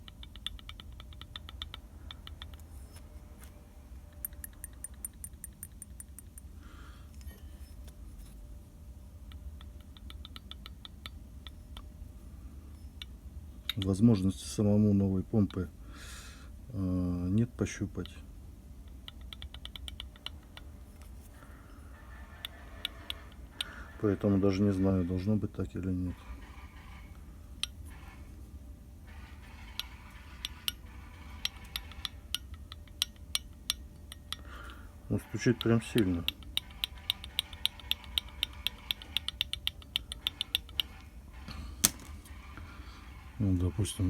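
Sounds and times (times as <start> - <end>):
water pump clicking: 35.6 - 41.1.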